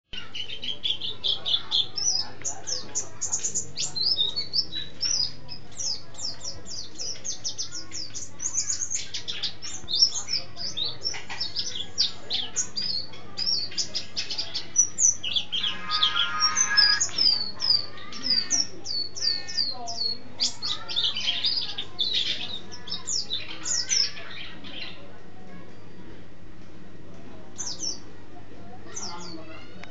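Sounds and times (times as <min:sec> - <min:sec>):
bird singing high chirps: 0:00.1 - 0:25.0.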